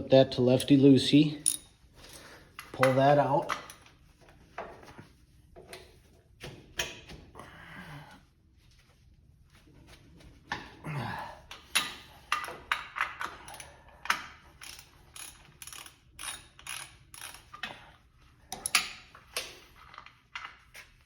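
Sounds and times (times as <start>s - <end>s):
ratchet clicking: 14.6s - 17.6s.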